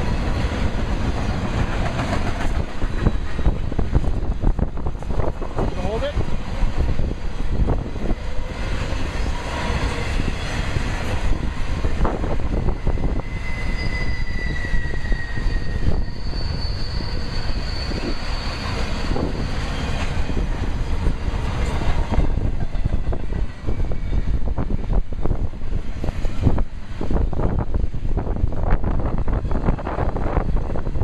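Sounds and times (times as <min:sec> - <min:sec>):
train wheels rumbling on rail: 0:00.0 - 0:31.0
wind buffeting microphone: 0:00.0 - 0:31.0
clicks of train wheels: 0:00.2 - 0:04.2
thin high squeal: 0:12.8 - 0:20.0.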